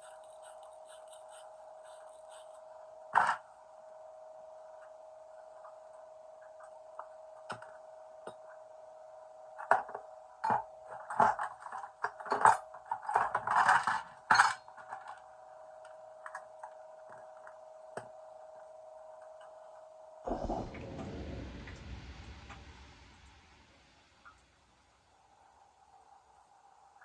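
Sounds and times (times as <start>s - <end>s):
faint hum: 0.0s - 27.0s.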